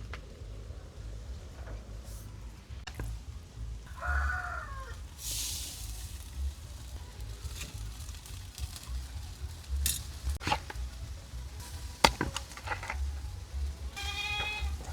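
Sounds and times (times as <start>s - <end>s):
rooster crowing: 3.9s - 5.0s
brief hiss: 5.1s - 8.4s.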